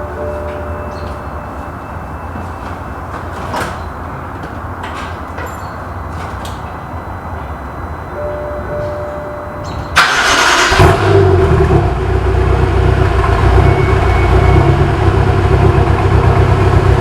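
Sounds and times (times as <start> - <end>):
car engine starting and idling: 8.2 - 17.0.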